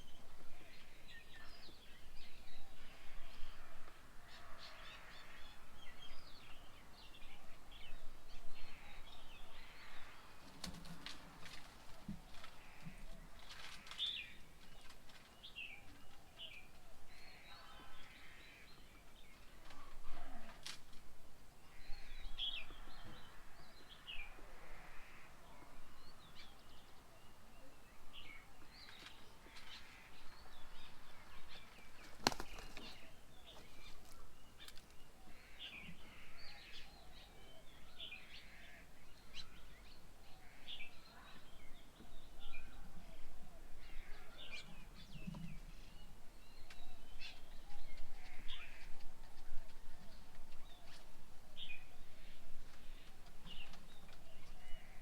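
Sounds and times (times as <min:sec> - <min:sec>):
low outdoor hiss: 0:00.0 - 0:55.0
birds chirping: 0:21.6 - 0:55.0.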